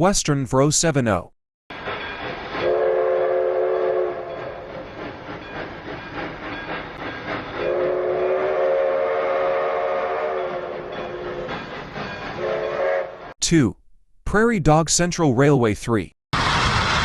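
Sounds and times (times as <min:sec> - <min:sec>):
train running and clanking: 0:01.7 - 0:13.4
steam locomotive chime whistle: 0:01.8 - 0:13.3.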